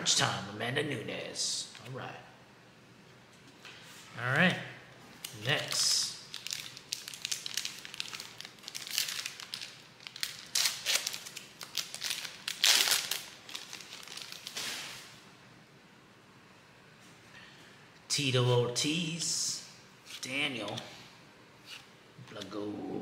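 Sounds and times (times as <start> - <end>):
plastic wrapper crinkling and tearing: 5.2 - 15.0.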